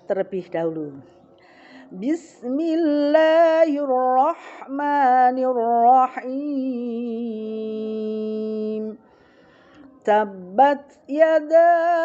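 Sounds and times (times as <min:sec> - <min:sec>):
woman chanting recitation: 0:00.0 - 0:12.0.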